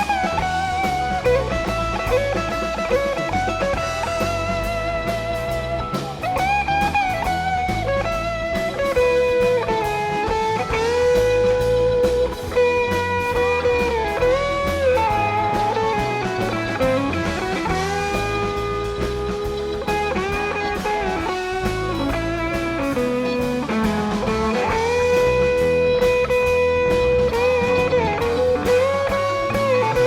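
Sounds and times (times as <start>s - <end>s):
electric guitar bending notes: 0.0s - 30.0s
live rock band: 0.0s - 30.0s.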